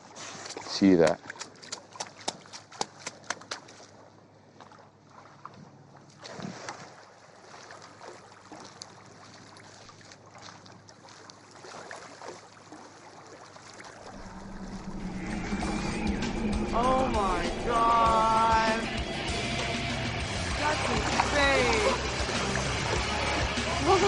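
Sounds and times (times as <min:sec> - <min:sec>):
wind: 0:00.0 - 0:24.0
waves washing against shore: 0:14.0 - 0:24.0.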